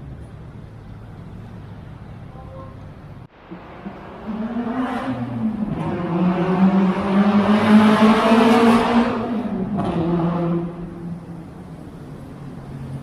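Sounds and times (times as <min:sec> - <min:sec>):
car engine exhaust revving: 0:03.5 - 0:11.4.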